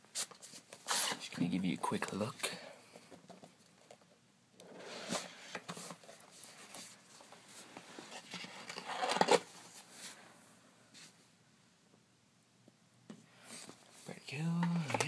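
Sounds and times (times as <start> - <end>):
packaging rustling and clicking: 8.2 - 9.5.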